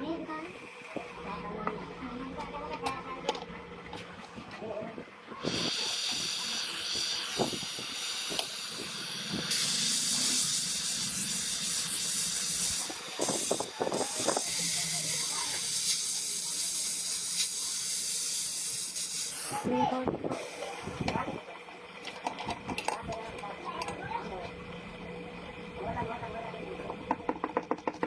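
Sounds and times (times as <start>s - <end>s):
high-pitched hiss: 5.4s - 19.6s.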